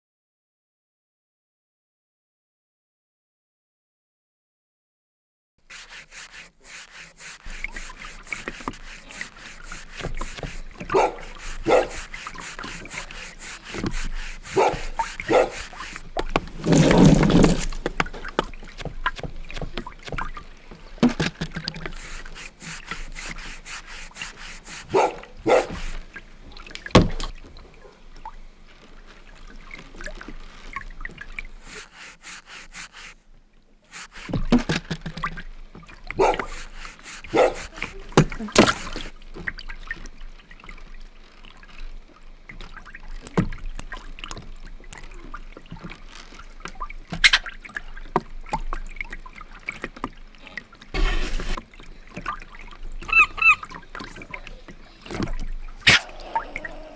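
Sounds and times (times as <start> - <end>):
knocks and rubbing: 5.7 - 26.2, 36.4 - 39.1, 51.0 - 51.6
water splashing and sloshing: 5.7 - 56.9
dog-like barks: 24.9 - 26.0, 37.3 - 37.9.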